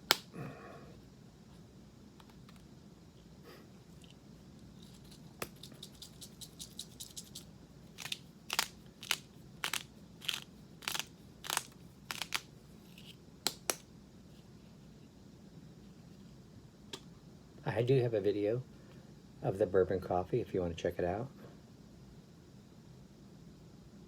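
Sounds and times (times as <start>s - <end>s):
spice grinder crunching: 4.8s - 13.8s.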